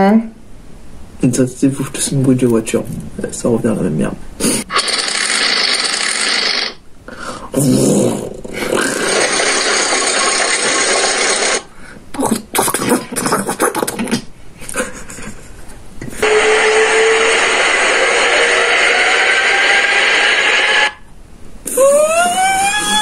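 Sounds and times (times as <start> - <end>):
person imitating car engine: 21.7 - 23.0.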